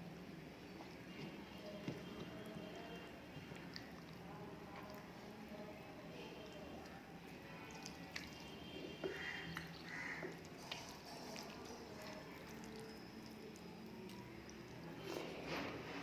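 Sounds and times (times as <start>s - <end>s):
wet squishes of chewing food: 0.4s - 16.0s.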